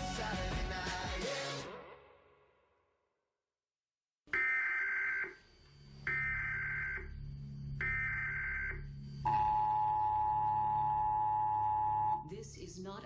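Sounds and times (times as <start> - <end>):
screechy data tones: 4.4 - 12.3
two-tone attention signal: 7.8 - 12.2.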